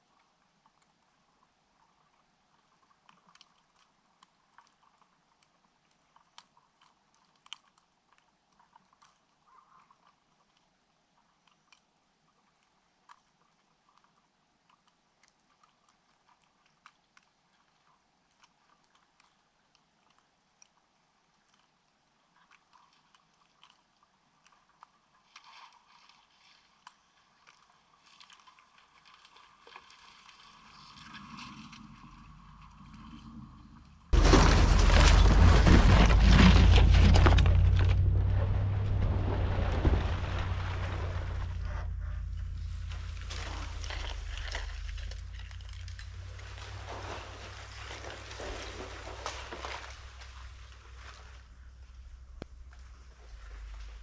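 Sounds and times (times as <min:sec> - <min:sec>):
faint clicks and ticks: 0:00.0 - 0:34.1, 0:40.8 - 0:54.0.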